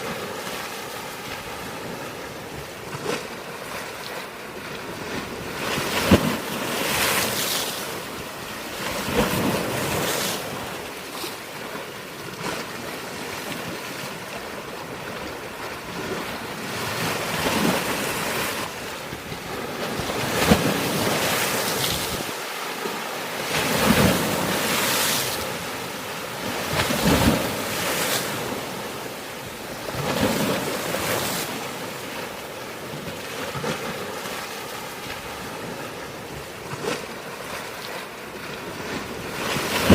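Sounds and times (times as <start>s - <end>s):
waves breaking on rocks: 0.0s - 39.9s
wind on microphone: 15.0s - 22.4s.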